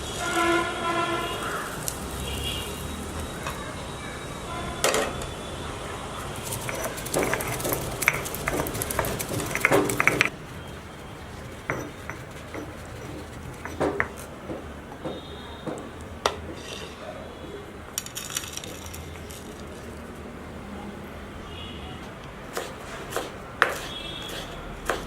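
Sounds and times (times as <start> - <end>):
metal utensils clinking on pots: 6.4 - 10.3, 11.4 - 17.1.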